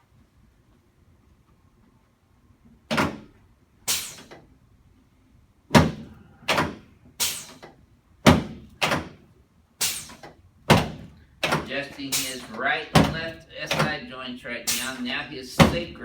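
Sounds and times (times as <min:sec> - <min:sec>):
sharp thuds of chiropractic table: 0:02.9 - 0:04.4, 0:05.7 - 0:09.2, 0:09.8 - 0:12.4, 0:13.0 - 0:14.0, 0:15.6 - 0:16.0.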